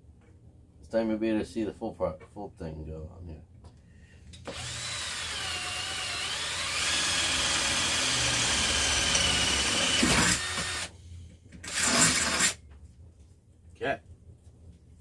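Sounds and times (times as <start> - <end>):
electric drill boring metal: 4.4 - 10.9, 11.6 - 12.6.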